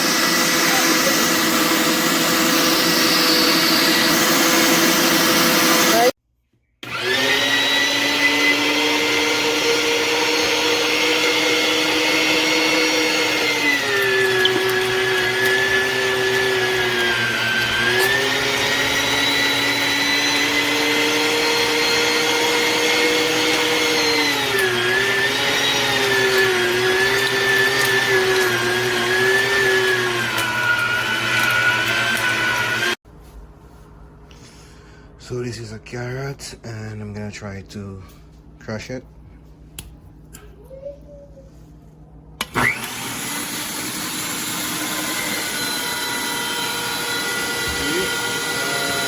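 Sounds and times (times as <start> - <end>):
meat grinder motor whining: 0.0 - 6.1, 6.8 - 33.0, 42.4 - 49.0.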